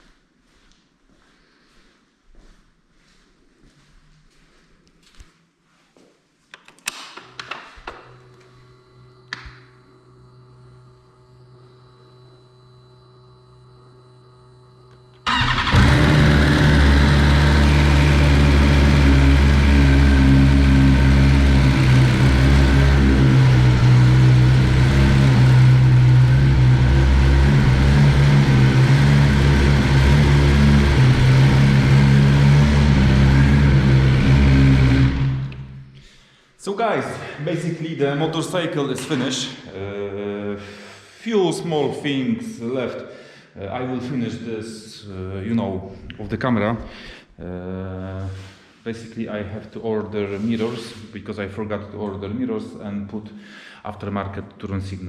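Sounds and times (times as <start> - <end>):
faint steady hum: 8.1 - 15.5
motorcycle engine running: 15.2 - 36.0.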